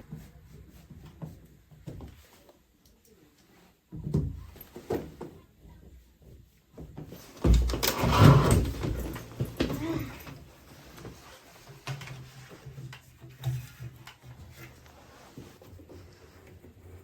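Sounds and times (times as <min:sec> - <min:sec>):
hard objects rattling and scraping: 0:07.2 - 0:17.0.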